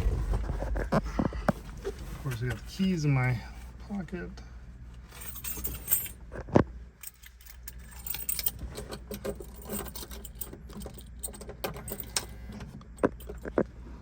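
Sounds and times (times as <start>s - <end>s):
car keys jangling: 5.2s - 6.2s, 7.0s - 12.4s.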